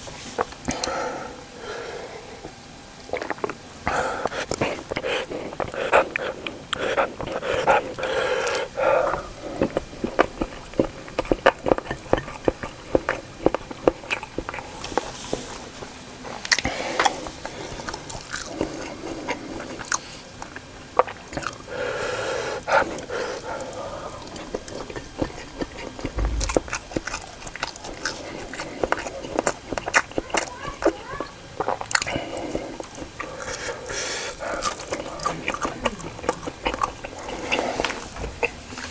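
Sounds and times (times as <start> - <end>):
chewing and biting food: 4.2 - 15.0, 17.9 - 21.7, 31.6 - 33.8, 34.4 - 38.6.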